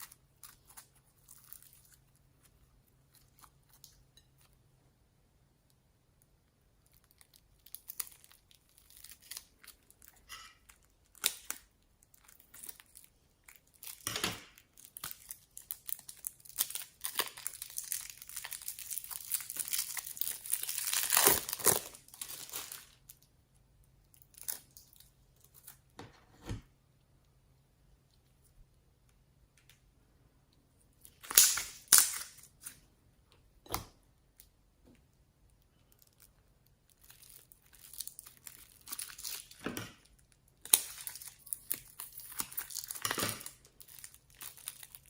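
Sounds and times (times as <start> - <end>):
crinkling handling noise: 6.8 - 23.3, 33.6 - 45.0.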